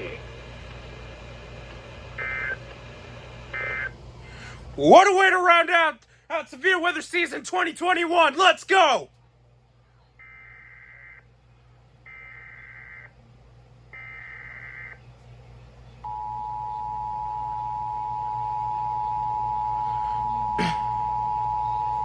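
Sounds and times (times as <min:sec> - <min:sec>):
low hum: 0:13.2 - 0:22.0
steady electronic alarm tone: 0:14.0 - 0:15.0, 0:16.0 - 0:22.0.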